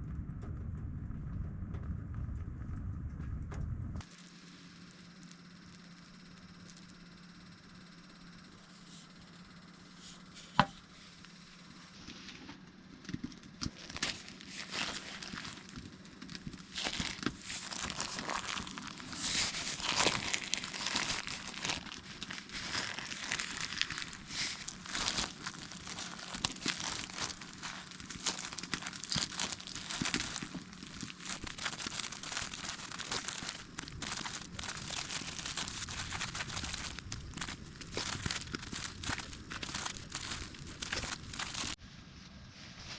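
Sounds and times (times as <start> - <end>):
hands kneading dough: 8.6 - 41.8.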